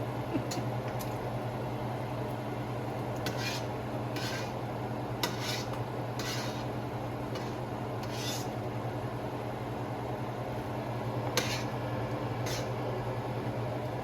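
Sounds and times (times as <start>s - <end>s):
steady low hum: 0.0s - 14.0s
metal ladle scraping pot: 5.2s - 6.7s, 7.3s - 8.6s, 11.4s - 11.7s, 12.4s - 12.7s.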